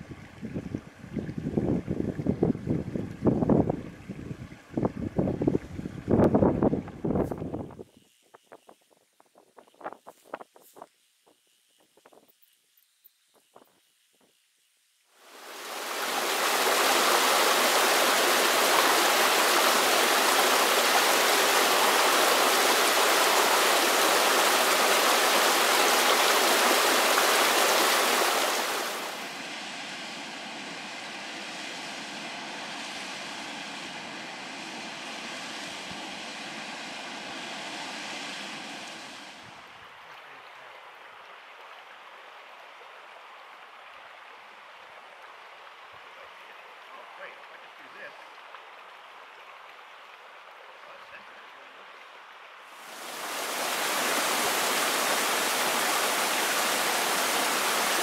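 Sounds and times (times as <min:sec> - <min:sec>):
rushing mountain stream: 0:15.2 - 0:29.5, 0:38.3 - 0:58.0.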